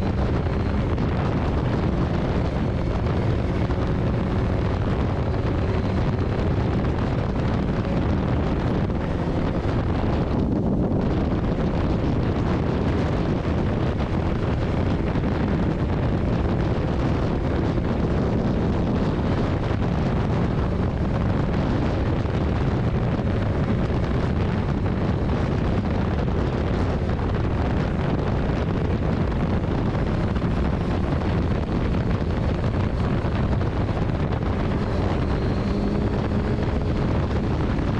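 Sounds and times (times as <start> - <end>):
low rumble: 0.0 - 37.9
wind noise on microphone: 0.0 - 37.9.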